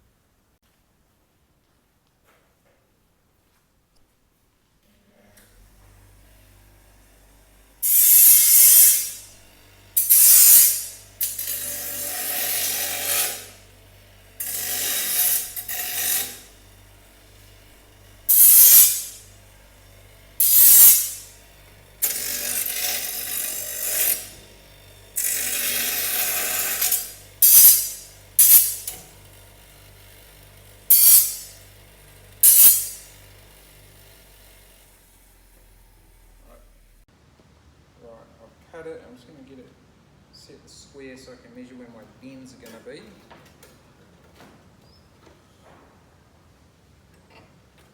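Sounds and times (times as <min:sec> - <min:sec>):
power tool cutting steel: 0:05.5 - 0:37.0.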